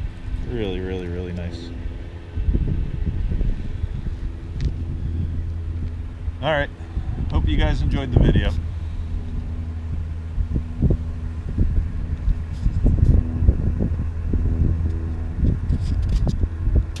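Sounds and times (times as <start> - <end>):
vehicle engine low rumble: 0.0 - 17.0
wind on microphone: 0.0 - 17.0.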